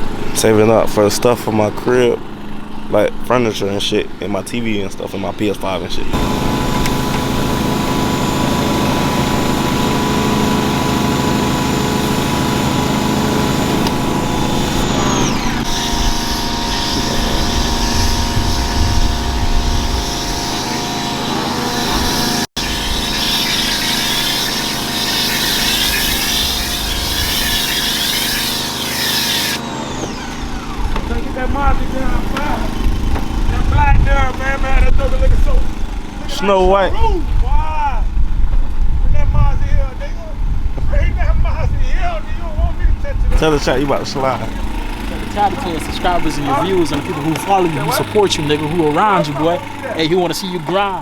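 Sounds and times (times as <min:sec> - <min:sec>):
loud machine hum: 0:06.1 - 0:36.3, 0:43.3 - 0:51.0.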